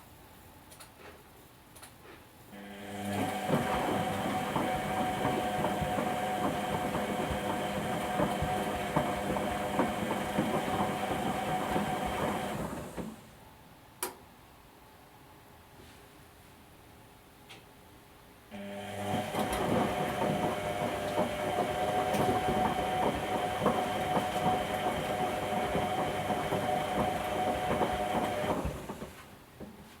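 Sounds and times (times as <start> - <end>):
washing machine motor whine: 2.6 - 13.3, 18.5 - 29.2.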